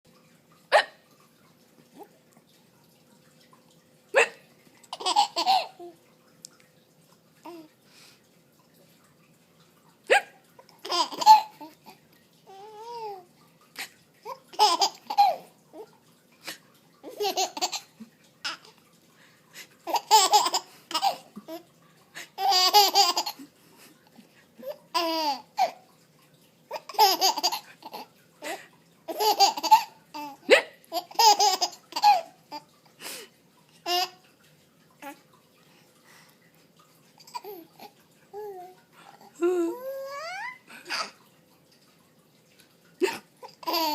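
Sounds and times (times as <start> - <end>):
adult fake hiccups: 0.7 - 1.1, 4.2 - 4.4, 10.1 - 10.4
baby laughing: 4.2 - 6.0, 10.1 - 11.9, 14.2 - 15.5, 17.0 - 18.7, 19.8 - 23.4, 24.6 - 25.8, 26.7 - 28.1, 29.1 - 32.7, 33.8 - 34.2, 37.2 - 38.8, 39.6 - 41.2, 43.1 - 43.9.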